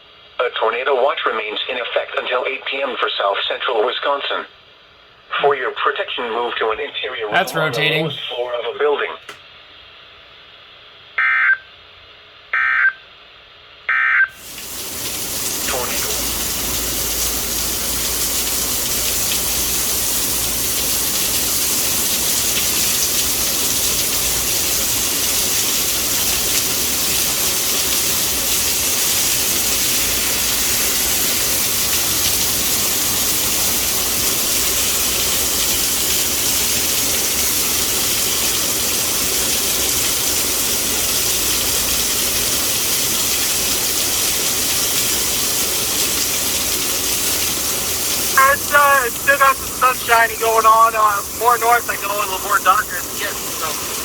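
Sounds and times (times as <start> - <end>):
heavy rain falling: 14.4 - 54.0.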